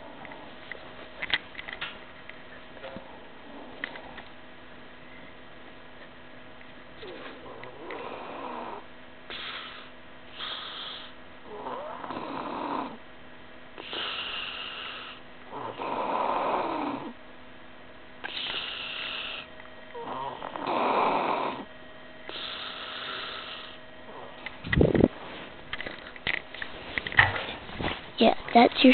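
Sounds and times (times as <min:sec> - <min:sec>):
person snoring: 0:07.0 - 0:13.0, 0:13.8 - 0:17.2, 0:18.3 - 0:21.7
hissy breaths: 0:09.3 - 0:11.2, 0:13.8 - 0:15.2, 0:18.2 - 0:19.5, 0:22.3 - 0:23.8.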